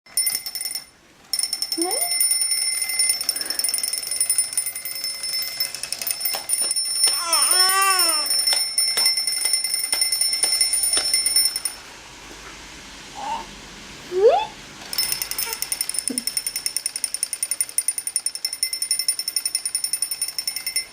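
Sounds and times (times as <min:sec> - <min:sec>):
alarm clock ringing: 0:00.1 - 0:11.8, 0:14.9 - 0:20.9
high voice crying out: 0:07.1 - 0:08.3.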